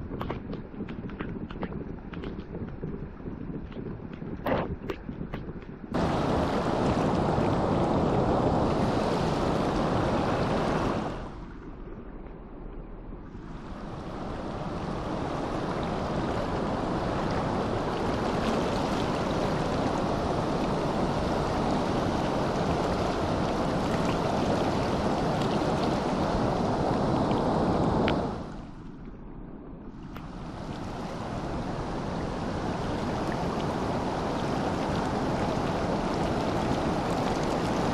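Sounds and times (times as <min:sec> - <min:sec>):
river current rushing: 0:06.0 - 0:11.4, 0:13.5 - 0:28.8, 0:30.2 - 0:37.9.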